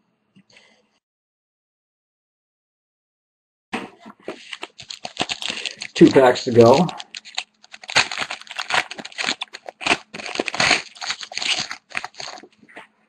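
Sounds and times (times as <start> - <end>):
wrapper tearing and crinkling: 4.3 - 12.7.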